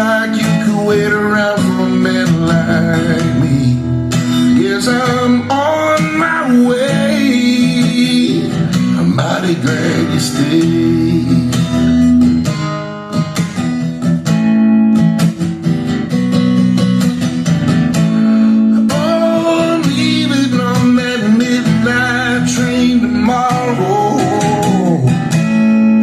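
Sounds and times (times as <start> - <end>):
guitar chords: 0.0 - 26.0
soft-rock ballad music: 0.0 - 26.0.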